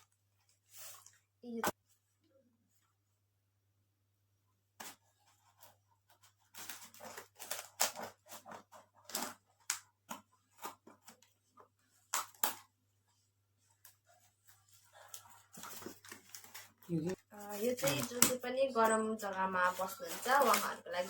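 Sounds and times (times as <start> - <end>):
packaging rustling and tearing: 4.8 - 12.7, 13.7 - 18.4, 19.6 - 21.0.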